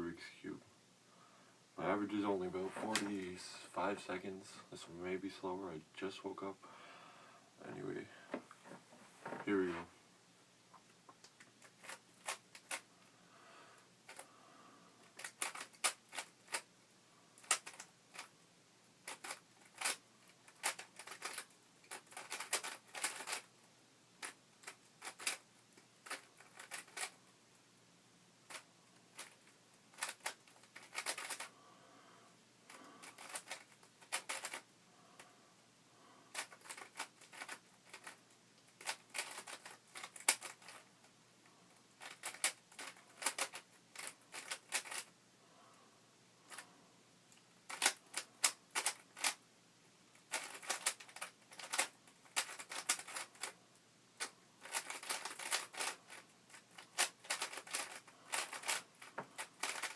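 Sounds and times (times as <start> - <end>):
puzzle cube rattling clicks: 11.6 - 12.8, 15.1 - 16.7, 17.4 - 18.3, 19.0 - 23.5, 24.2 - 25.4, 26.0 - 27.2, 28.5 - 31.5, 33.1 - 34.6, 36.3 - 40.9, 42.0 - 45.1, 47.7 - 49.4, 50.1 - 53.6, 54.2 - 59.9.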